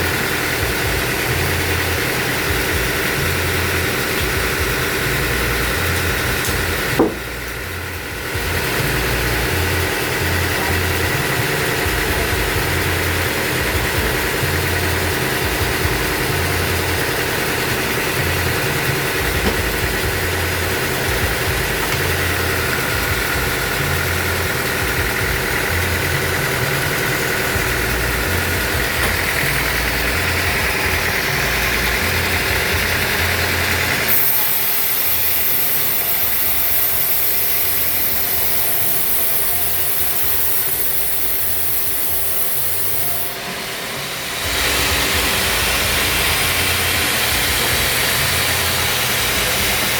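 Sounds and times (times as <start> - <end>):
high whine: 0.0 - 49.9
sawmill machinery humming: 0.0 - 49.9
sharp knock: 7.0 - 7.3.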